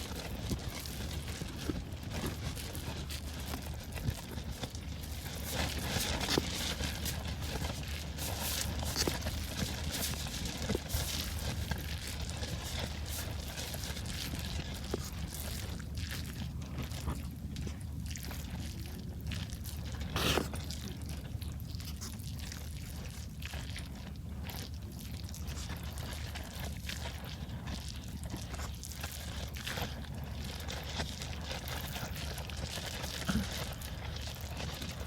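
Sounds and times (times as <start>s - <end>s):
light clicks and crinkling: 0.0s - 24.8s.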